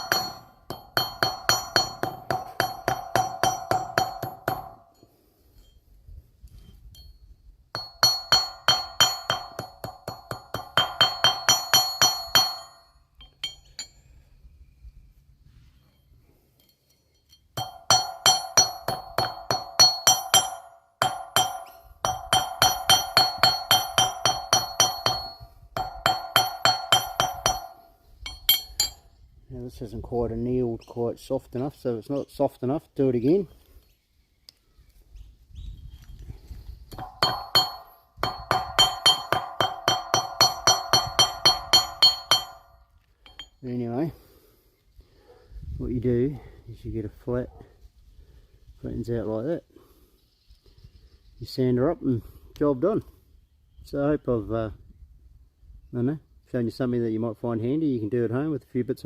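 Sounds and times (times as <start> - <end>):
hammer ringing on steel: 0.0 - 5.0, 7.8 - 13.9, 17.6 - 29.0, 36.9 - 43.6.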